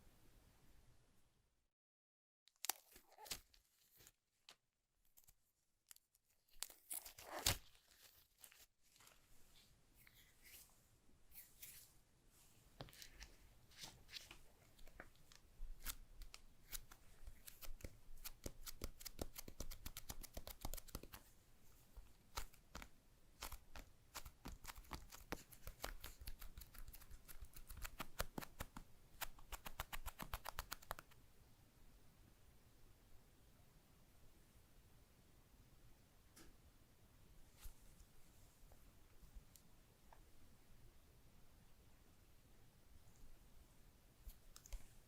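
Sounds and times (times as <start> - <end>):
hands handling phone packaging: 5.1 - 9.2.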